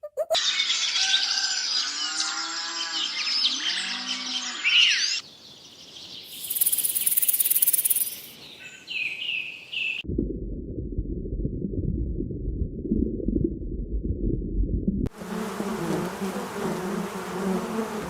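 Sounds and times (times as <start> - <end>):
birds chirping: 0.3 - 10.0
cow mooing: 2.1 - 4.6.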